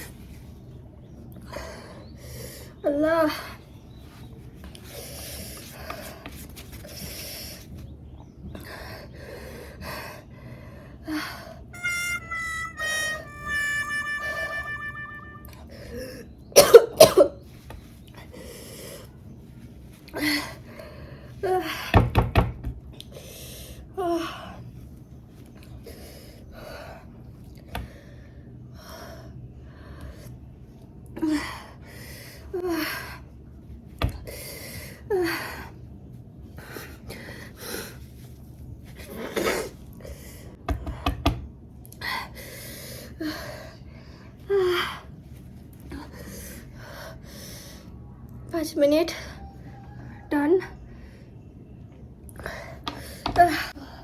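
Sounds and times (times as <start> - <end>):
high harmonica-like note: 11.7 - 15.8.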